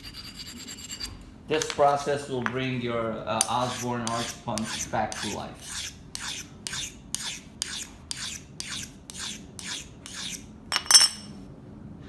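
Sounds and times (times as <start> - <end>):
metal rasping on sharpening stone: 0.0 - 1.1, 3.4 - 10.5
ringing metallic clink: 10.7 - 11.3.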